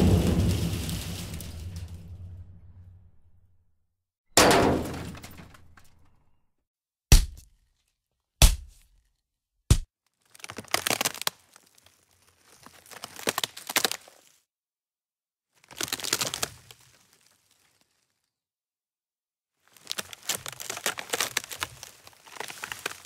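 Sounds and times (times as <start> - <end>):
sharp impact hits: 0.0 - 3.2
brittle crunching and crinkling: 10.1 - 14.4, 15.6 - 18.3, 19.6 - 23.0.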